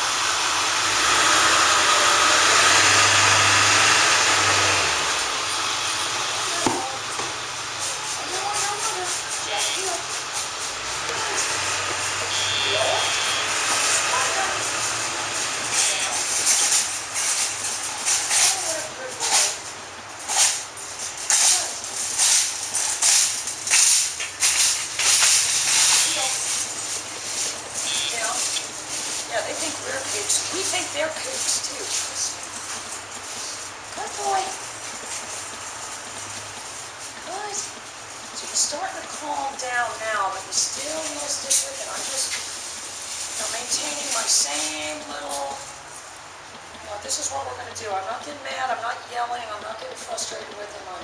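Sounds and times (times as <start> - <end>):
vehicle passing by: 0.0 - 37.8.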